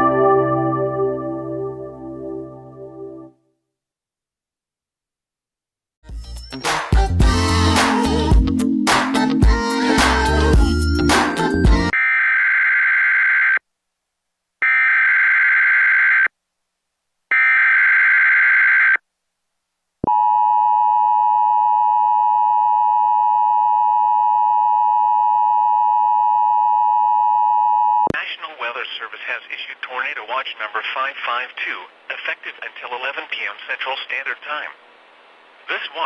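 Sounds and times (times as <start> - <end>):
steady attention tone: 0.0 - 3.3.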